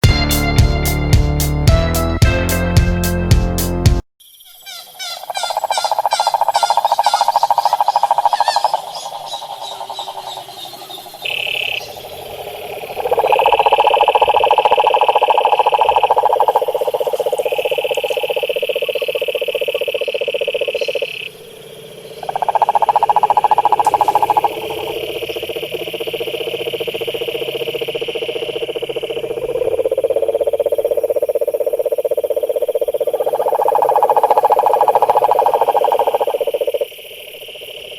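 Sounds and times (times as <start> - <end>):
frogs trilling: 4.2 - 37.9.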